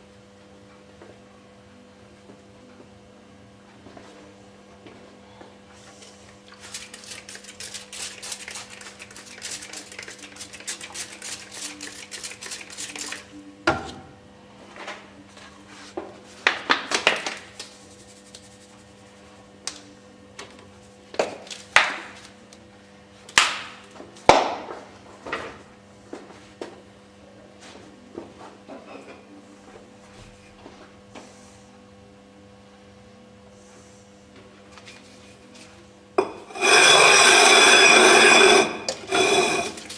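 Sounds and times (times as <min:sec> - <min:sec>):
glass and tools clanking: 0:36.2 - 0:39.8
gritty scraping of glass grinding: 0:36.2 - 0:39.9.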